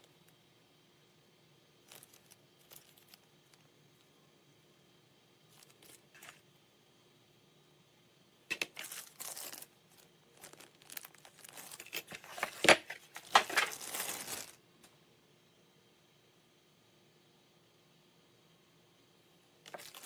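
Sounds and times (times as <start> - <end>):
crinkling handling noise: 1.8 - 3.7, 5.5 - 6.4, 8.5 - 14.9, 19.7 - 20.0.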